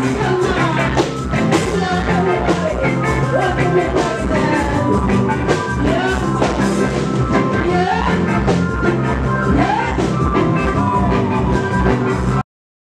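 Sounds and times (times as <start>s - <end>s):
person singing: 0.0s - 12.4s
reggae band playing: 0.0s - 12.4s.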